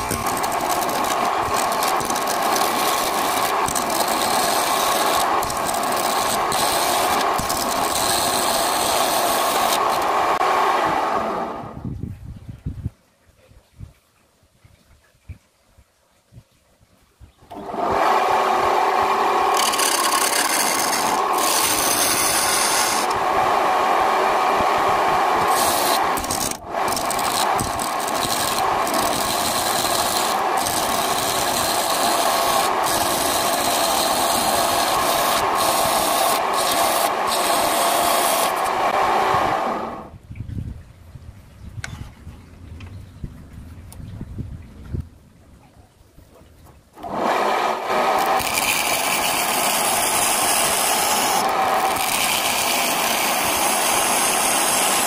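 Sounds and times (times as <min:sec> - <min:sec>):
lathe tool scraping wood: 0:00.0 - 0:11.6, 0:17.5 - 0:40.0, 0:47.0 - 0:55.0.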